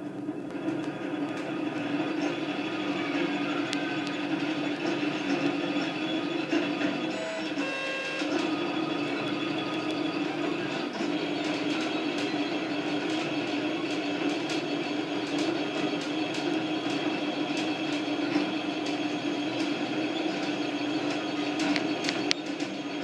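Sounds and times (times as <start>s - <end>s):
stepper motors whirring: 0.0s - 23.0s.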